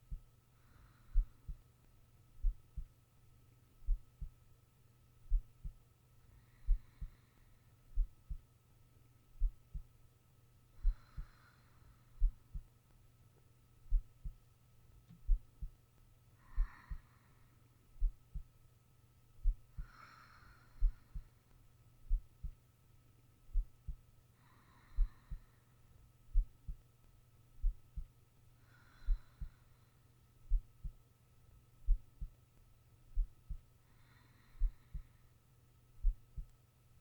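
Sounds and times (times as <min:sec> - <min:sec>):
faint steady hum: 0:00.0 - 0:37.0
slow breathing: 0:00.5 - 0:01.7, 0:06.3 - 0:08.4, 0:10.7 - 0:12.7, 0:16.4 - 0:18.4, 0:19.4 - 0:22.2, 0:24.3 - 0:26.5, 0:28.6 - 0:30.6, 0:33.5 - 0:35.4
heartbeat thumping: 0:01.2 - 0:01.6, 0:02.4 - 0:02.9, 0:03.8 - 0:04.4, 0:05.3 - 0:05.8, 0:08.0 - 0:08.5, 0:09.4 - 0:09.9, 0:12.2 - 0:12.7, 0:13.9 - 0:14.4, 0:15.2 - 0:15.8, 0:16.6 - 0:17.0, 0:18.0 - 0:18.5, 0:19.4 - 0:19.9, 0:20.8 - 0:21.3, 0:22.1 - 0:22.6, 0:23.5 - 0:24.0, 0:25.0 - 0:25.4, 0:26.3 - 0:26.8, 0:27.6 - 0:28.1, 0:30.5 - 0:31.0, 0:31.8 - 0:32.3, 0:33.1 - 0:33.6, 0:34.6 - 0:35.1, 0:36.0 - 0:36.5.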